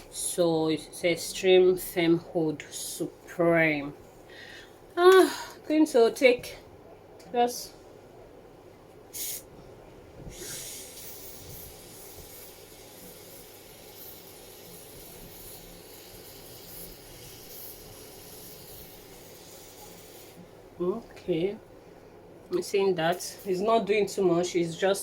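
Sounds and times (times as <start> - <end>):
aerosol spray hissing: 9.2 - 9.5, 10.3 - 20.4.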